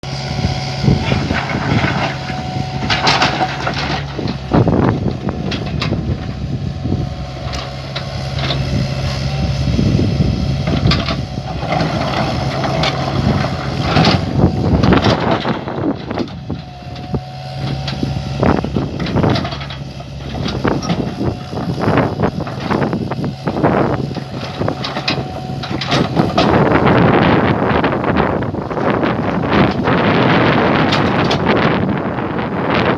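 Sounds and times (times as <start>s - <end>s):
excavator engine running: 0.0s - 32.9s
metal clanks and knocks: 1.0s - 6.4s.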